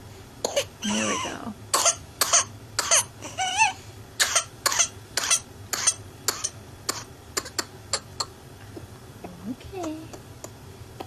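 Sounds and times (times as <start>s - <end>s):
child coughing: 0.5s - 3.2s, 4.2s - 8.3s.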